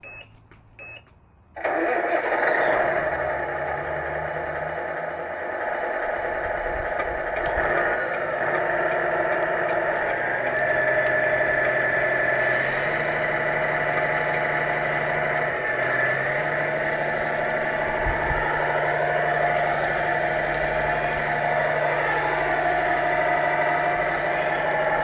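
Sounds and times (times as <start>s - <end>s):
small engine running: 1.6s - 25.0s.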